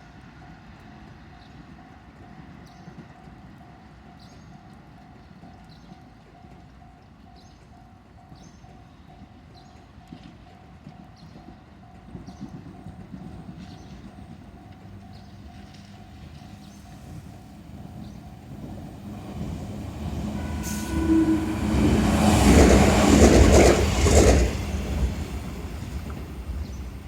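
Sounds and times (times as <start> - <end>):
electric train passing: 12.9 - 27.0.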